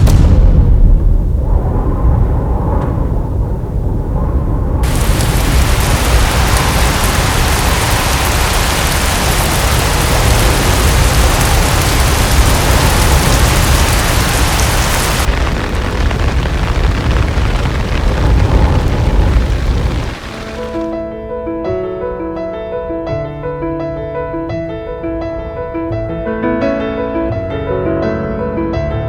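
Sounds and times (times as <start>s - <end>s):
deep steady rumble: 0.0s - 20.9s
heavy rain hiss: 4.8s - 20.9s.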